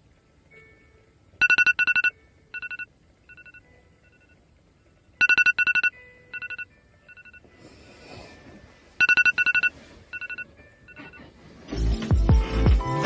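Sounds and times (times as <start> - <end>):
rapid electronic alarm beeps: 1.4 - 4.3, 5.2 - 7.4, 9.0 - 11.3.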